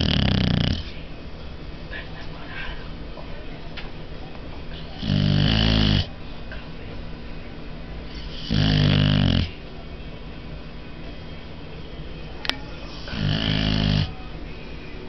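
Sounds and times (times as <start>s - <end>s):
dog snoring: 0.0s - 1.0s, 4.9s - 6.1s, 8.1s - 9.6s, 12.8s - 14.2s.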